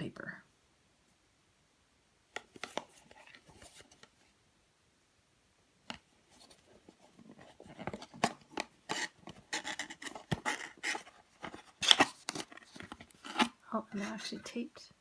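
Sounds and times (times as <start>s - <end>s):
cardboard boxes being handled: 6.2s - 14.6s.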